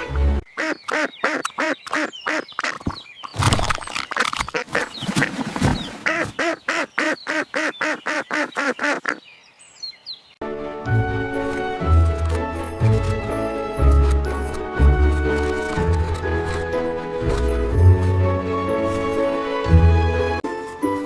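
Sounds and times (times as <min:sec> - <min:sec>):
duck quacking: 0:00.6 - 0:02.8, 0:06.0 - 0:09.2.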